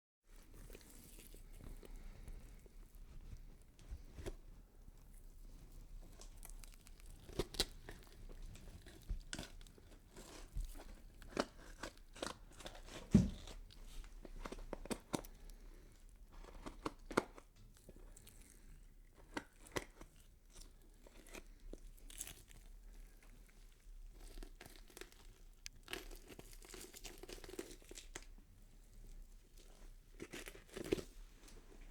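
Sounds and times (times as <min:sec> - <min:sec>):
skin tearing and crackling: 0:06.0 - 0:13.7, 0:24.2 - 0:28.3.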